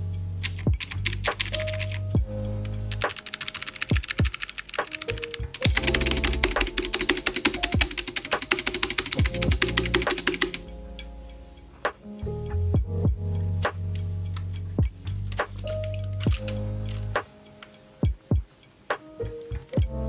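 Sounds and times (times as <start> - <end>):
background music with bass: 0.0 - 3.2, 5.0 - 20.0
fast typing on keyboard: 0.5 - 2.0, 2.9 - 10.7, 15.4 - 17.0.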